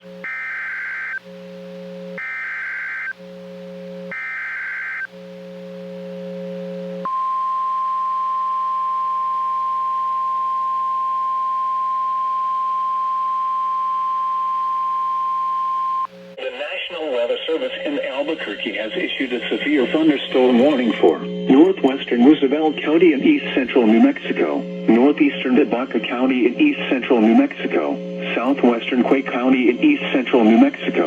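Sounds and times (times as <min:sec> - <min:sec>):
steady warning alarm tone: 0:00.0 - 0:16.3, 0:18.1 - 0:29.8
low buzz: 0:00.0 - 0:16.4, 0:19.2 - 0:30.8
screechy data bursts: 0:00.2 - 0:01.2, 0:02.2 - 0:03.2, 0:04.1 - 0:05.1.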